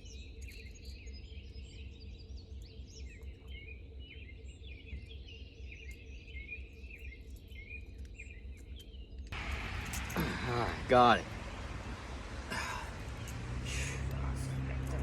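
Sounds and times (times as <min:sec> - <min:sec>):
songbirds chirping and singing: 0:00.0 - 0:15.0
steady low rumble: 0:09.3 - 0:15.0.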